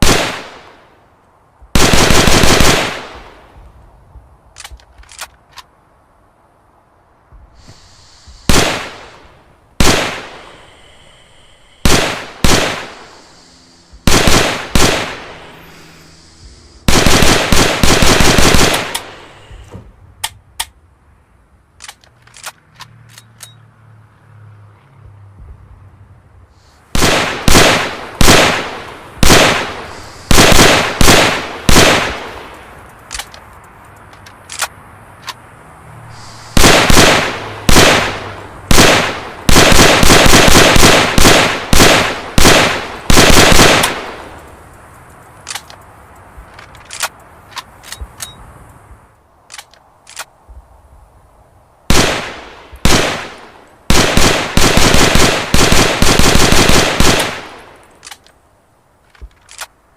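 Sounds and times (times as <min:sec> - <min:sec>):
rifle shots: 0:00.0 - 0:00.8, 0:01.8 - 0:03.4, 0:08.4 - 0:10.6, 0:11.8 - 0:13.4, 0:14.0 - 0:15.9, 0:16.8 - 0:19.4, 0:26.9 - 0:32.6, 0:36.5 - 0:44.4, 0:51.9 - 0:57.7
faint clicks: 0:32.5 - 0:35.4, 0:43.8 - 0:48.8.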